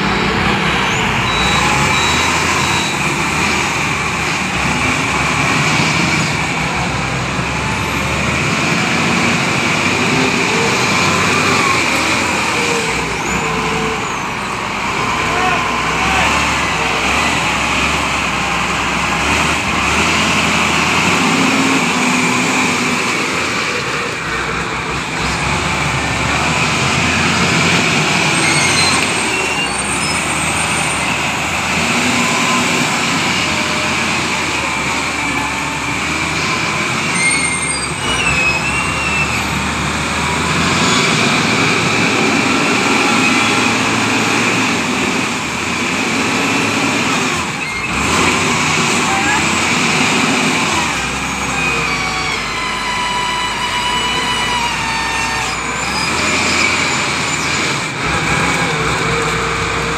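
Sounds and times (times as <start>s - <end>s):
heavy vehicle engine running: 0.0s - 59.9s
short high squeals: 28.3s - 31.3s, 37.1s - 39.6s, 51.2s - 57.7s.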